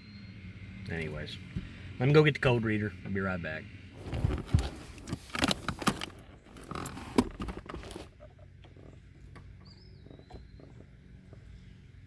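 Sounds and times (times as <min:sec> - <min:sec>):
sharp handling clicks and knocks: 0:04.1 - 0:11.8.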